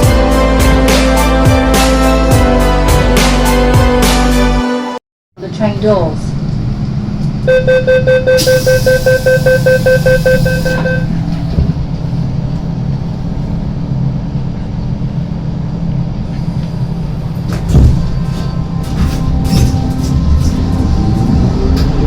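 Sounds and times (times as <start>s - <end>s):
train running hum: 5.4s - 22.0s
rapid warning beeps: 7.5s - 11.2s
short thump: 11.5s - 11.9s.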